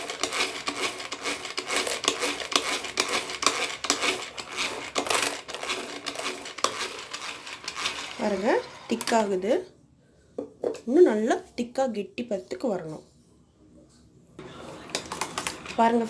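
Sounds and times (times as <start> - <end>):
hand beater whipping in a bowl: 0.0 - 9.2.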